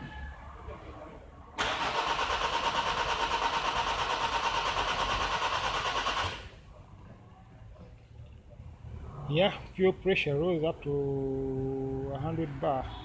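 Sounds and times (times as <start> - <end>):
starter motor cranking engine: 1.6 - 6.5.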